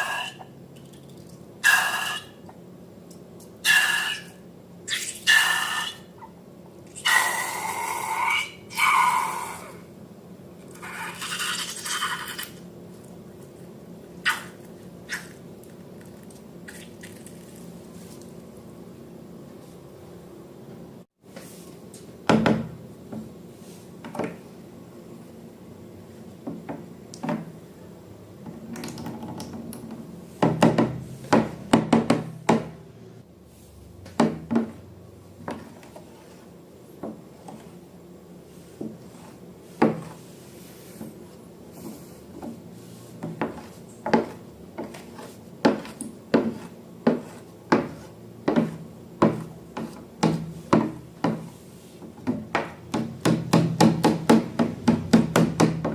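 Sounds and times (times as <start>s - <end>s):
hard object scraping: 35.5s - 36.5s, 38.7s - 41.1s.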